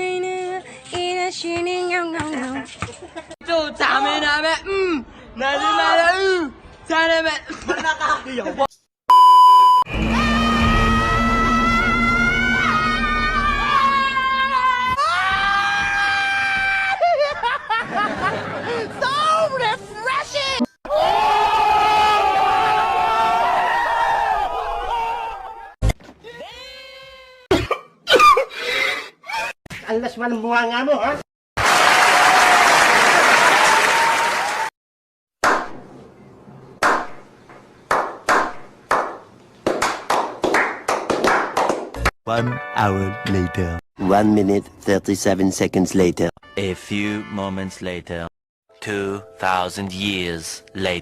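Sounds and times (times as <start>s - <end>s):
music: 9.9s - 13.8s, 42.3s - 43.8s, 46.4s - 47.9s, 48.7s - 51.0s
long high-pitched screams: 10.0s - 16.7s
crowd applause: 31.6s - 34.7s
single hand claps: 37.9s - 42.1s.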